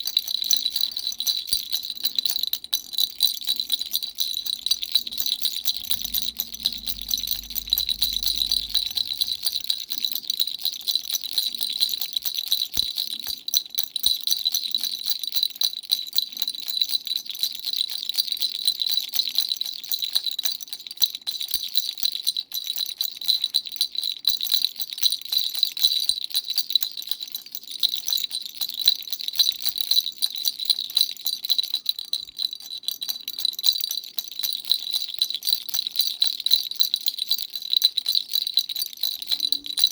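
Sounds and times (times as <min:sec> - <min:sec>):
baby rattle shaking: 0:00.0 - 0:13.5.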